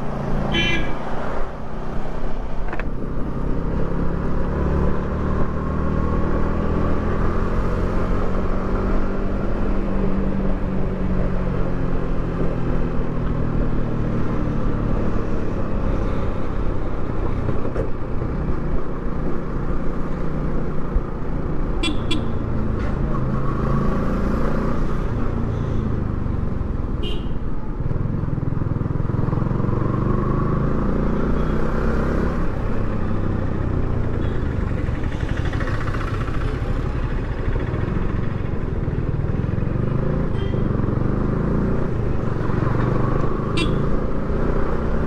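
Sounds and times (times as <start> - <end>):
horn toots: 0.5 - 1.0, 21.8 - 22.4, 43.5 - 43.9
motorcycle engine cruising: 19.5 - 45.0.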